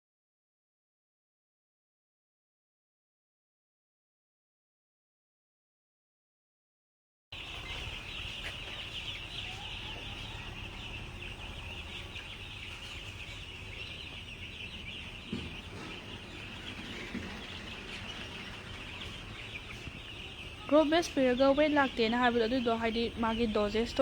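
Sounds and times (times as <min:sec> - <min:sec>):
chickens peeping and chirping: 0:07.4 - 0:24.0.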